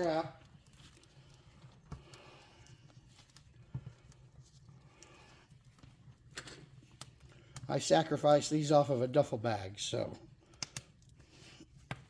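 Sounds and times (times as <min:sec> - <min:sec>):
soft rustling of a strap: 0:00.0 - 0:07.3.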